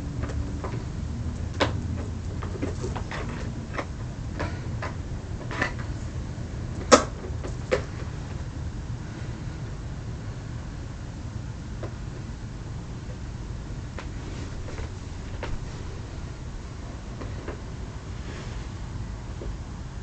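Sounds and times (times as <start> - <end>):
steady low rumble: 0.0 - 20.0
handling clicks and knocks: 0.2 - 8.1.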